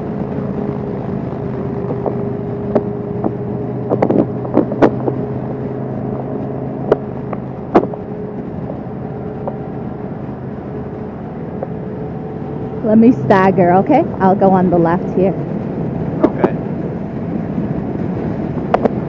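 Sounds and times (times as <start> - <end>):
motorcycle engine droning: 0.0 - 19.0
wind noise: 0.0 - 19.0.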